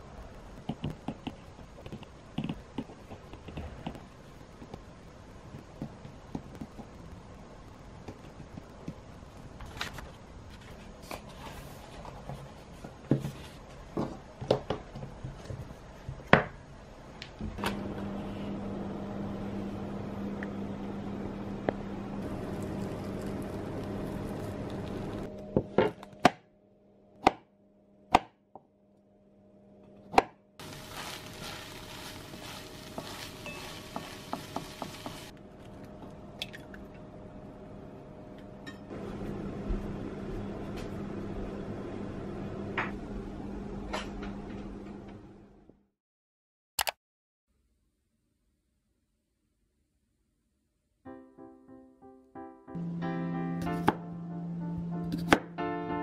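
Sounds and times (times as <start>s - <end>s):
steady hum: 16.8s - 25.8s.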